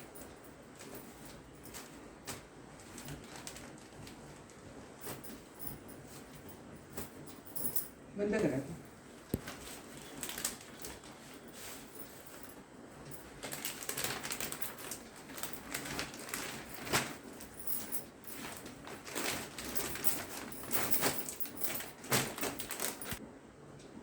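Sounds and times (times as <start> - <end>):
plastic packaging crinkling: 1.6 - 4.3, 9.4 - 12.5, 13.1 - 23.2.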